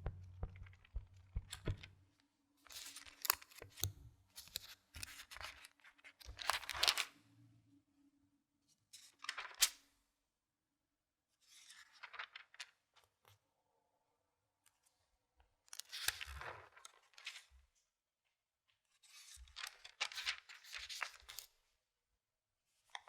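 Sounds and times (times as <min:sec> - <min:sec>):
book pages rustling: 0:00.0 - 0:01.9, 0:02.7 - 0:07.1, 0:11.5 - 0:12.7, 0:19.0 - 0:21.5.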